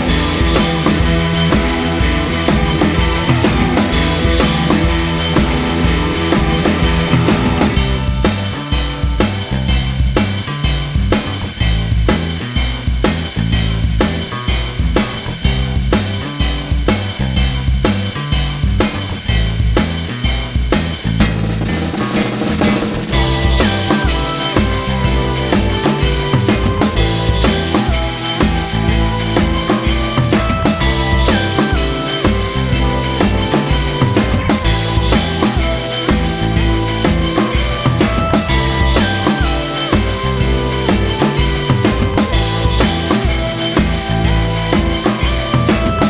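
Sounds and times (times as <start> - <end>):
bass line: 0.0 - 46.0
loud music with drum beat: 0.0 - 46.0.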